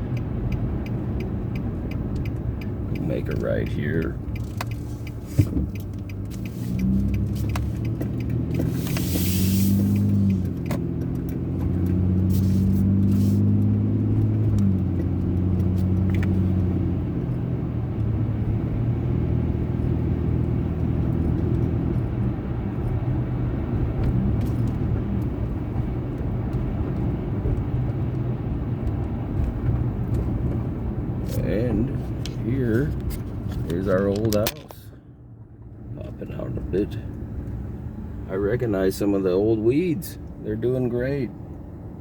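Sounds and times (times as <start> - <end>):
car engine accelerating: 0.0 - 34.8
tyre road noise: 0.0 - 42.0
burst of hiss: 8.8 - 9.9.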